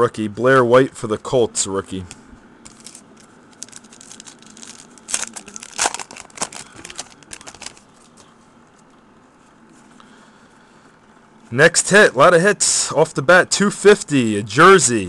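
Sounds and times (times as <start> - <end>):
plastic wrapper crinkling and tearing: 2.7 - 8.3.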